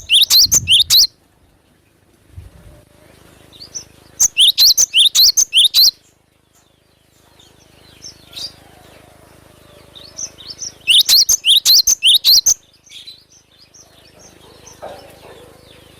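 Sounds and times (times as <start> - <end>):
bird singing whistled notes: 0.0 - 1.1, 3.6 - 6.1, 10.0 - 14.8
soft bird chirps: 0.0 - 1.1, 3.0 - 8.6, 9.7 - 15.9.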